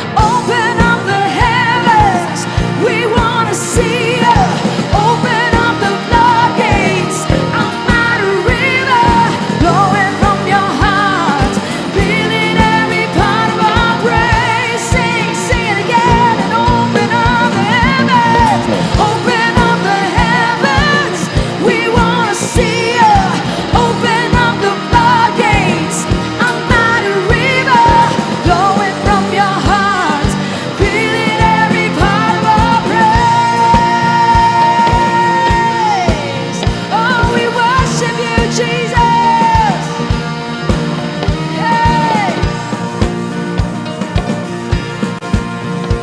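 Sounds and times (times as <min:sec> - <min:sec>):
pop-rock band playing: 0:00.0 - 0:46.0
voices singing: 0:00.0 - 0:46.0.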